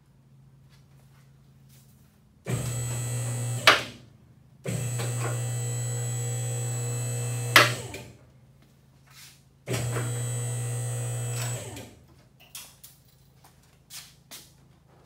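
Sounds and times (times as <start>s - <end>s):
electric hoist motor running: 2.5s - 4.0s, 4.6s - 8.2s, 9.7s - 12.1s.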